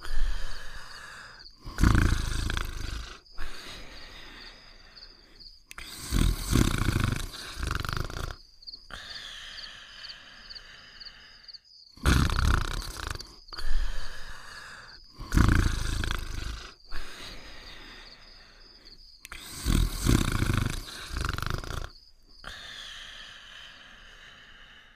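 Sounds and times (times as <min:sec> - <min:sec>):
cartoon dog snoring: 0:00.0 - 0:03.9, 0:05.7 - 0:09.1, 0:12.0 - 0:17.4, 0:19.3 - 0:22.7
quiet breathing: 0:00.0 - 0:11.9, 0:12.7 - 0:24.9.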